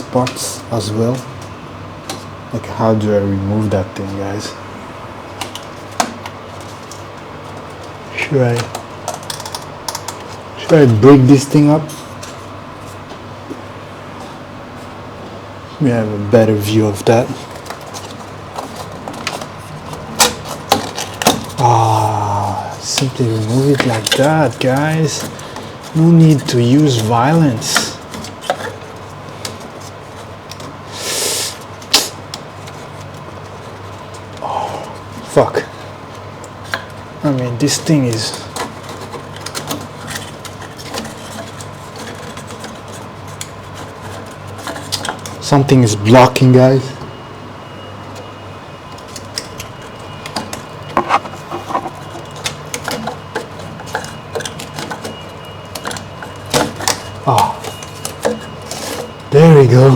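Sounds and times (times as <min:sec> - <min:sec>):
faint steady hum: 0:00.0 - 0:59.9
plastic parts clicking and knocking: 0:05.4 - 0:10.4, 0:17.4 - 0:21.8, 0:22.8 - 0:30.8, 0:37.7 - 0:45.4, 0:48.9 - 0:59.3
scraping rustle: 0:16.6 - 0:34.4, 0:37.6 - 0:45.5, 0:49.0 - 0:59.3.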